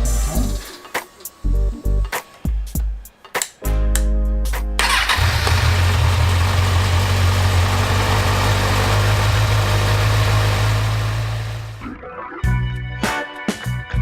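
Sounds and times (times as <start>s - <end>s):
motorcycle engine idling: 4.8s - 11.8s.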